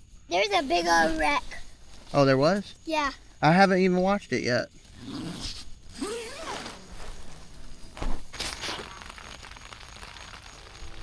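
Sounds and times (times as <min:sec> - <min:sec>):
rustle of people moving: 0:00.0 - 0:11.0
rain falling on a tent: 0:05.9 - 0:11.0.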